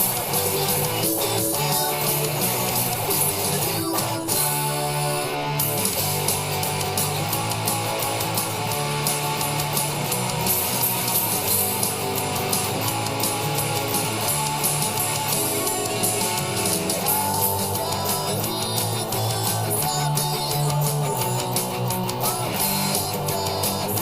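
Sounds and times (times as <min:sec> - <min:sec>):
bass and drums: 0:00.0 - 0:24.0
distorted electric guitar chords: 0:00.0 - 0:24.0.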